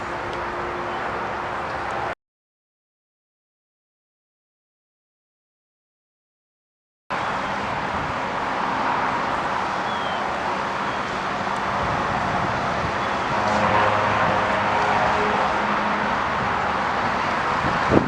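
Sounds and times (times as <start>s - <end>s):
wind buffeting microphone: 7.6s - 8.5s, 11.1s - 18.0s.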